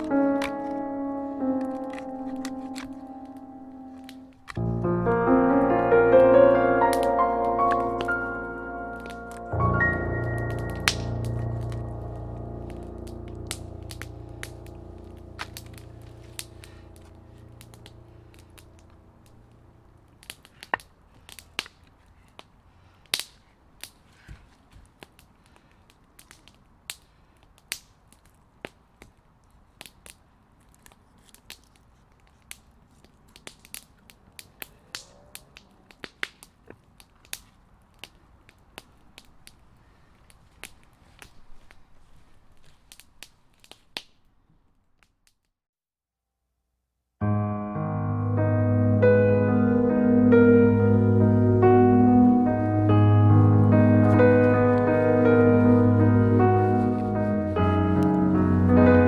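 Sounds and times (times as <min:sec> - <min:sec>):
background music: 0:00.0 - 0:18.8, 0:47.2 - 0:59.0
campfire crackling and popping: 0:00.0 - 0:44.4, 0:48.8 - 0:59.0.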